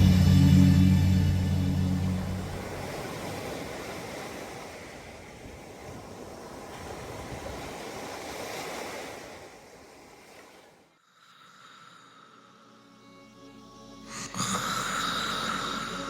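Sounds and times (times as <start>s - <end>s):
soft music with held tones: 0.0s - 2.6s, 12.4s - 16.0s
ocean waves: 0.0s - 13.0s, 14.0s - 16.0s.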